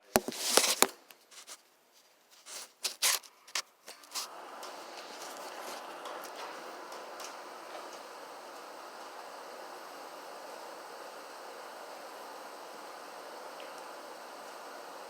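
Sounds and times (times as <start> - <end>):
handling clicks and rustles: 0.0 - 1.6.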